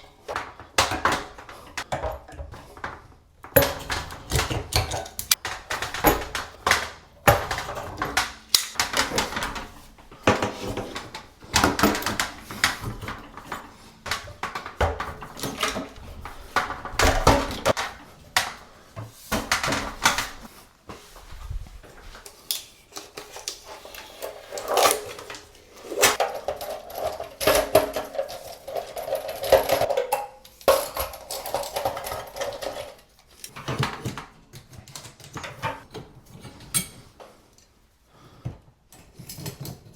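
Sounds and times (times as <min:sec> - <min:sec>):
metal tools clanking: 0:24.0 - 0:33.7.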